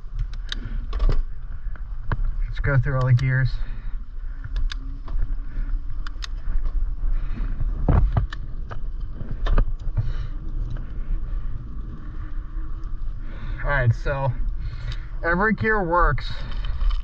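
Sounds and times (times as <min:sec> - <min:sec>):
wind rumbling on microphone: 0:00.0 - 0:17.0
bike chain shifting clicks: 0:05.9 - 0:06.4.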